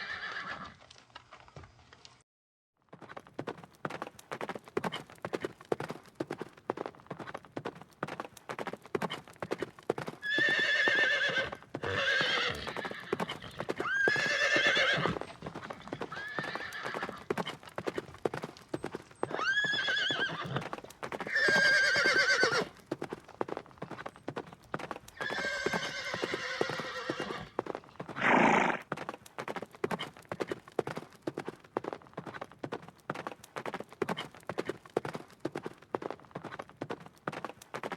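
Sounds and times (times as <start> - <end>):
horse whinnying: 0.0 - 0.8, 10.2 - 17.6, 19.2 - 22.8, 25.2 - 28.8
horse hooves clip-clopping: 0.0 - 2.2, 2.8 - 37.9.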